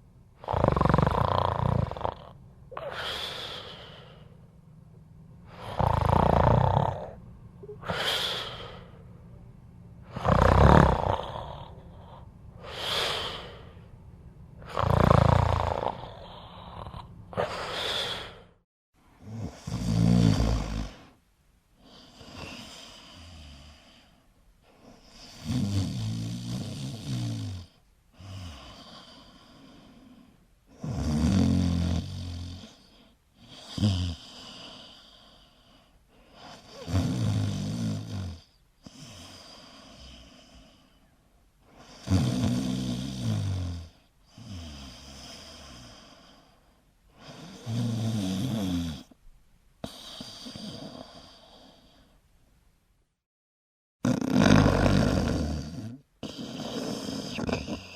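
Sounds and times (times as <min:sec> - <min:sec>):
person snoring loudly: 0:00.4 - 0:04.3, 0:05.5 - 0:09.0, 0:10.0 - 0:13.8, 0:14.6 - 0:18.6, 0:19.2 - 0:21.1, 0:25.1 - 0:29.9, 0:30.7 - 0:32.8, 0:33.4 - 0:35.1, 0:36.4 - 0:40.8, 0:41.9 - 0:46.2, 0:47.2 - 0:49.2, 0:49.8 - 0:51.8, 0:54.0 - 0:57.9
slow buzzing snore: 0:00.4 - 0:04.4, 0:05.4 - 0:09.1, 0:10.0 - 0:13.9, 0:14.6 - 0:18.6, 0:19.2 - 0:21.2, 0:21.8 - 0:49.2, 0:49.8 - 0:52.2, 0:54.0 - 0:57.9
airy exhale: 0:07.8 - 0:09.0.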